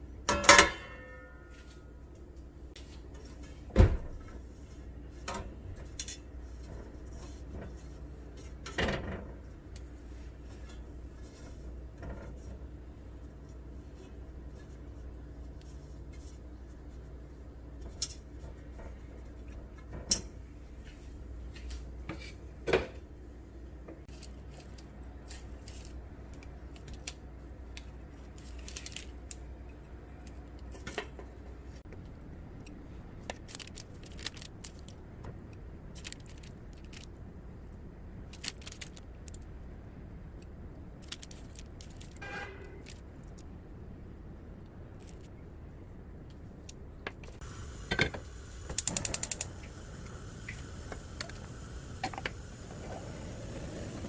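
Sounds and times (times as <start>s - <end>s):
steady low hum: 43.1s - 54.0s.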